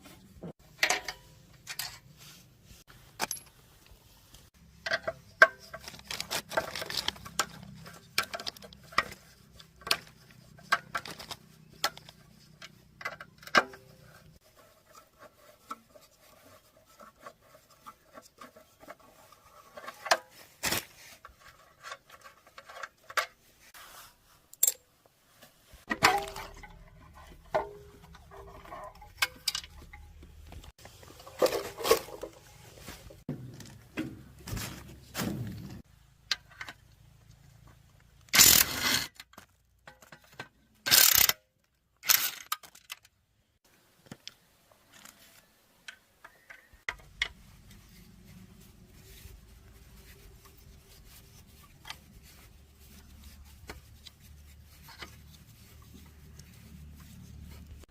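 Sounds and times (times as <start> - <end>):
metal tools clinking: 3.2 - 3.6, 24.5 - 24.8.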